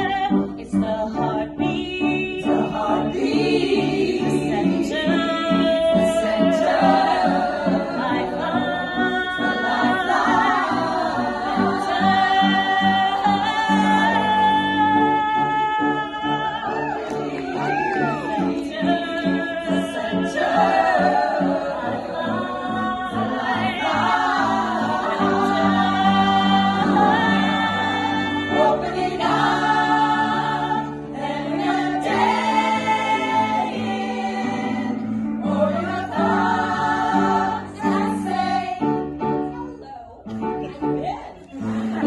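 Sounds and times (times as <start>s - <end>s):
women singing in harmony: 0.0s - 39.4s, 41.1s - 42.0s.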